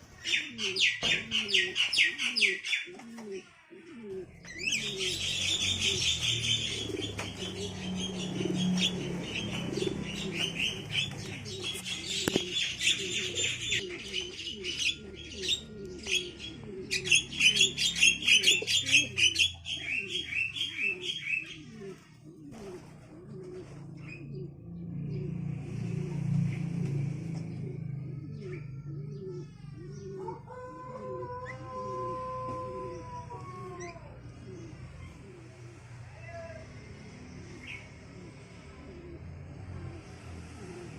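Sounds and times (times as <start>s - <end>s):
birds chirping rapidly: 0.0s - 2.9s, 4.3s - 22.0s
pigeons cooing: 0.0s - 40.9s.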